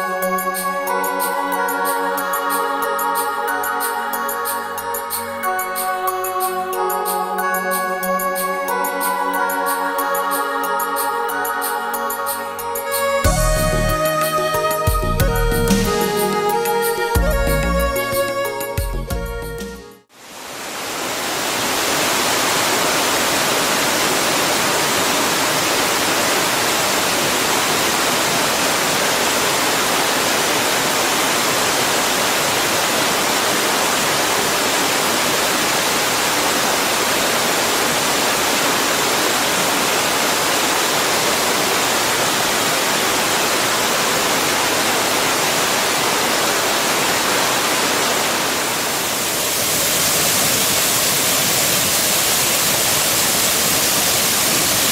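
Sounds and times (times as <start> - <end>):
waterfall rushing: 20.2 - 54.9.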